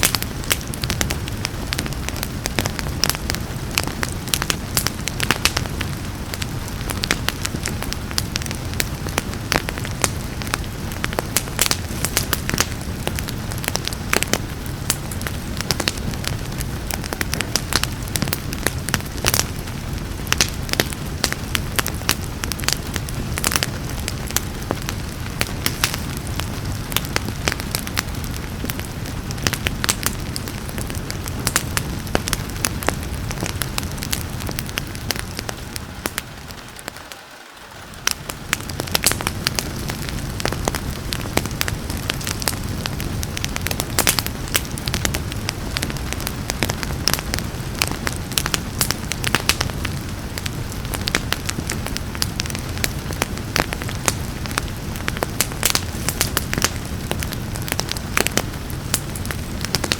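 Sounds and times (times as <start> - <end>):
steady rain hiss: 0.0 - 59.9
wood fire crackling and popping: 0.0 - 59.9.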